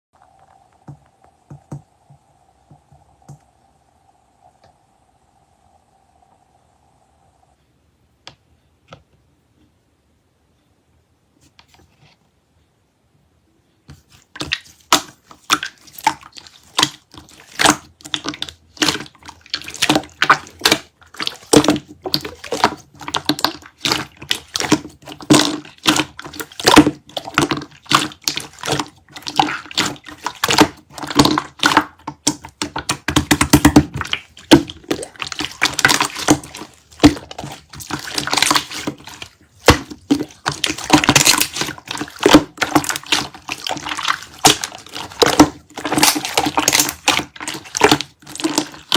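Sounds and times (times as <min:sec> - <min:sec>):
slime squishing with wet pops: 0:13.9 - 0:48.9.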